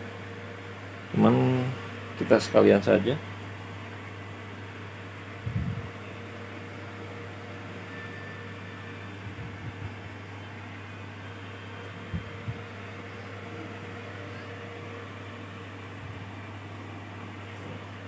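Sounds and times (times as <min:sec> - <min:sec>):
low electrical hum: 0:00.0 - 0:18.0
soft low thumps: 0:12.1 - 0:12.7.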